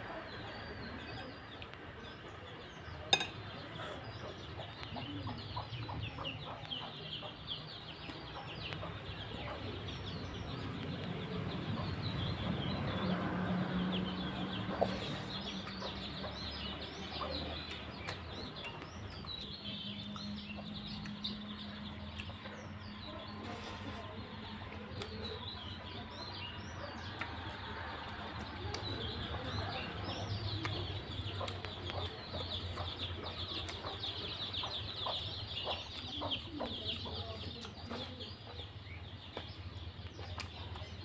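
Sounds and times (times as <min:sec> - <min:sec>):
birds chirping and clucking: 0:00.0 - 0:41.0
chewing food: 0:00.4 - 0:41.0.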